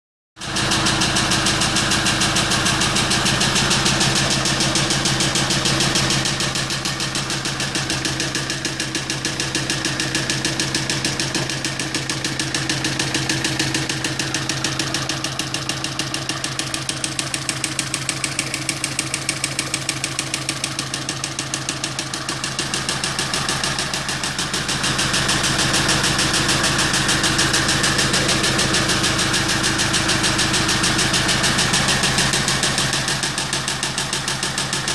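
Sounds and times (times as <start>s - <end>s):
car engine idling with knock: 0.4s - 34.9s.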